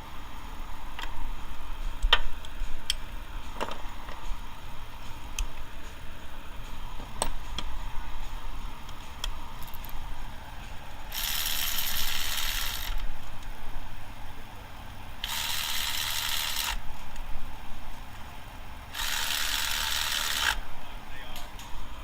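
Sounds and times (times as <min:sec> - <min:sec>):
ratchet wrench clicking: 0:08.8 - 0:10.0, 0:11.1 - 0:13.1, 0:15.2 - 0:16.8, 0:18.9 - 0:20.6.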